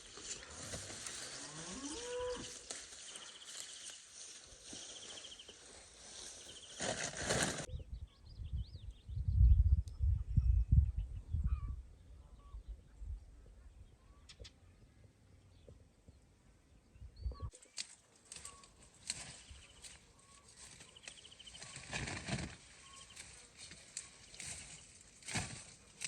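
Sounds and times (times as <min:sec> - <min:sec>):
dry crackling and rustling: 0:00.0 - 0:07.7, 0:17.5 - 0:26.0
bird chirps: 0:02.6 - 0:04.0, 0:04.6 - 0:05.7, 0:13.9 - 0:14.9, 0:18.4 - 0:22.0, 0:22.7 - 0:25.0.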